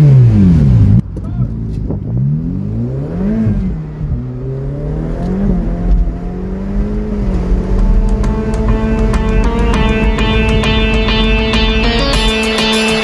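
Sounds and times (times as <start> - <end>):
car engine revving: 0.0 - 13.0
music: 8.0 - 13.0.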